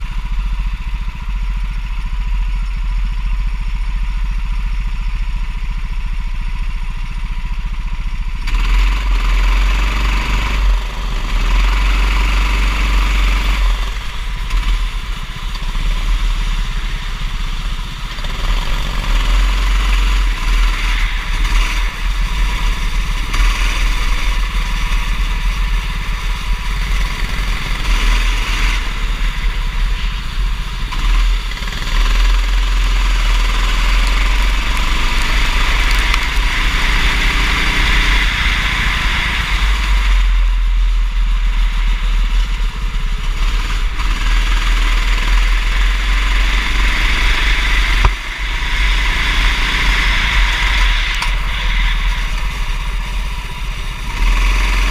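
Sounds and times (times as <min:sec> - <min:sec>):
go-kart engine revving: 0:00.0 - 0:54.9
loud rushing hiss: 0:43.6 - 0:54.9.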